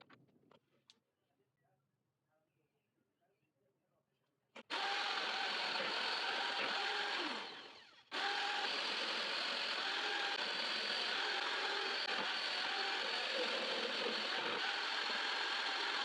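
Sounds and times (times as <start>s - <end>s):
power tool motor running: 4.6s - 16.0s.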